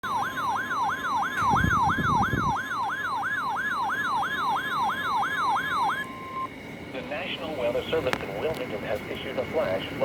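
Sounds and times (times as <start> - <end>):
siren-like sweeping tone: 0.0 - 6.5
steady alarm tone: 0.0 - 6.6.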